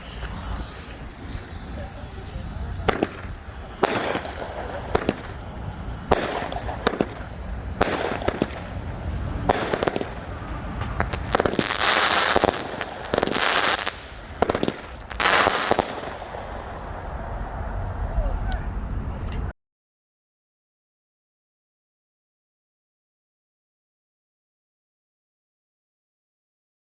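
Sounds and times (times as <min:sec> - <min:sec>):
fireworks cake firing: 0:00.0 - 0:17.7.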